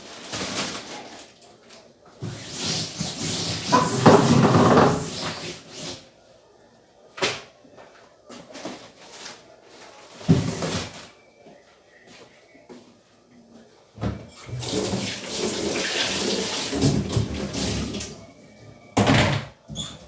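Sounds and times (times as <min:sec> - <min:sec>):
kitchen items clattering: 0:00.0 - 0:06.0, 0:08.3 - 0:11.2, 0:14.0 - 0:20.0.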